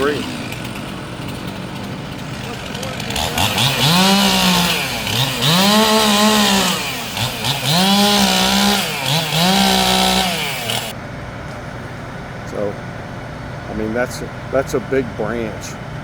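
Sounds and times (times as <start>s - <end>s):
chainsaw revving: 0.0s - 11.0s.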